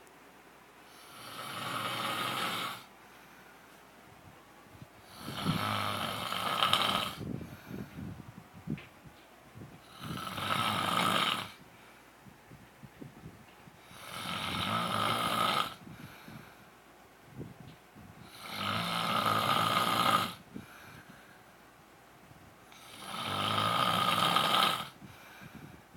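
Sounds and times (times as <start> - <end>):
quiet breathing: 0.8 - 8.7, 9.6 - 19.3, 20.0 - 23.4, 24.8 - 25.9
man snoring: 1.0 - 2.9, 5.1 - 7.3, 9.8 - 11.6, 13.9 - 15.9, 18.2 - 20.4, 22.8 - 25.0.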